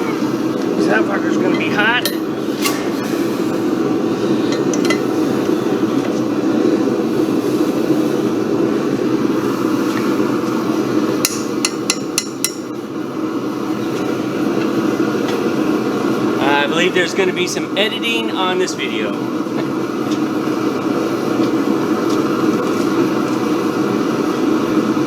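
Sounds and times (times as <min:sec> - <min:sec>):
hammer tapping on metal: 0:11.2 - 0:12.7.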